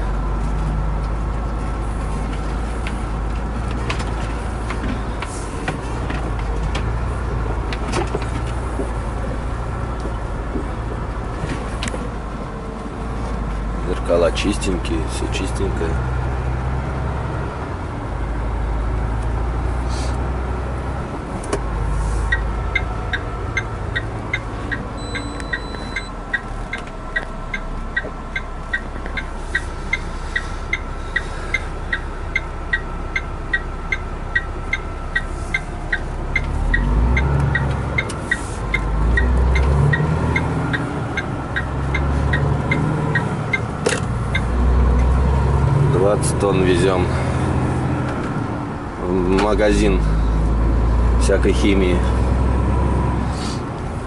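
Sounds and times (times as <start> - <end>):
truck engine running: 0.0 - 54.0
turn signal ticking: 21.4 - 45.7.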